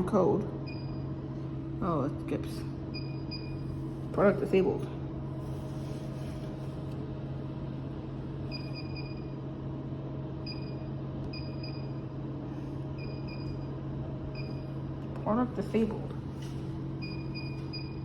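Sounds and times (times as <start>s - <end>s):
steady machine hum: 0.0s - 18.0s
vending machine keypad beeping: 17.0s - 18.0s.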